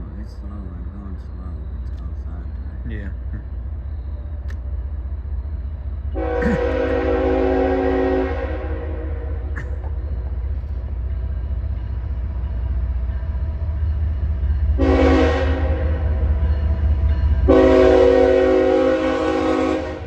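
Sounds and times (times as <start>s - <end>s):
passing train rumble: 0.0s - 20.0s
train horn blast: 6.2s - 9.7s, 14.7s - 16.3s, 17.4s - 20.0s.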